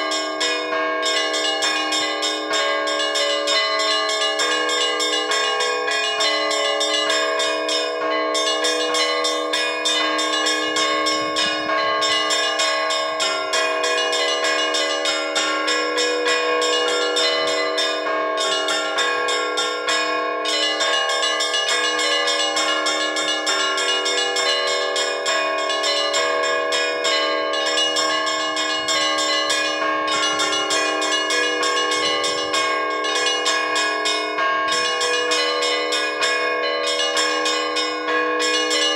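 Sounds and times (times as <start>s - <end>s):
large bells humming: 0.0s - 38.9s
small church bells rapidly striking: 0.0s - 38.9s.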